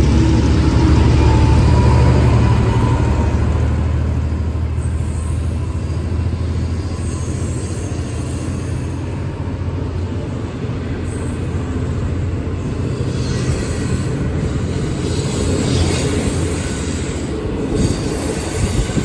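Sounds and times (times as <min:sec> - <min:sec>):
diesel locomotive rumble: 0:00.0 - 0:19.0
rail and wheel noise: 0:00.0 - 0:19.0.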